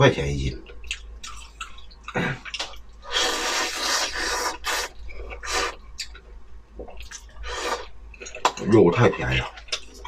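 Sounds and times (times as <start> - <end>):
noodles being slurped: 2.5 - 5.8.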